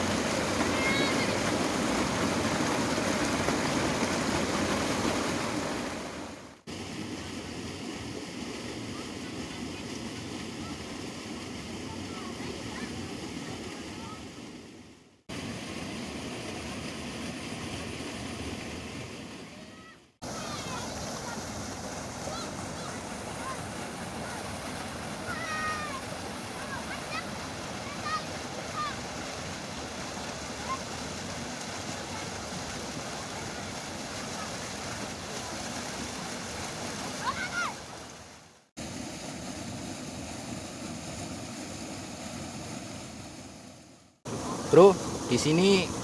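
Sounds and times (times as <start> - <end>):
steady rushing outdoor noise: 44.3 - 46.0.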